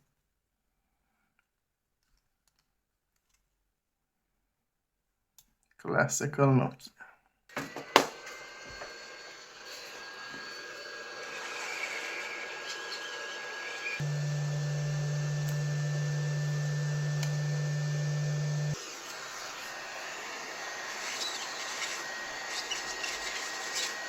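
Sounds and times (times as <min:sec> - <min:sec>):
electric appliance hissing: 0:07.5 - 0:24.0
loud low hum: 0:14.0 - 0:18.8.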